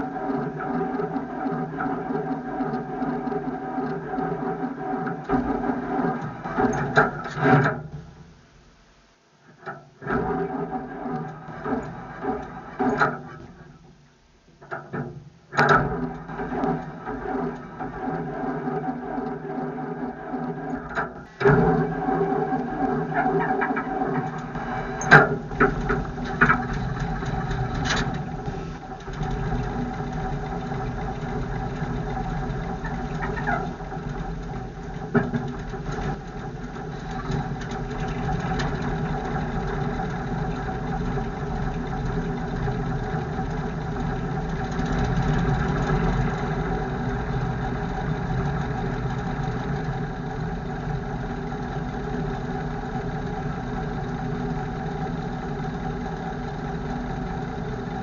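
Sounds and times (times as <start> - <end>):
truck engine idling: 21.8 - 58.0
sharp engine knocks: 23.1 - 49.7.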